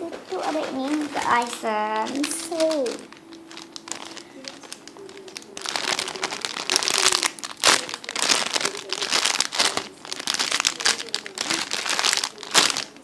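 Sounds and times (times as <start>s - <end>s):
plastic packaging crinkling: 0.2s - 13.0s.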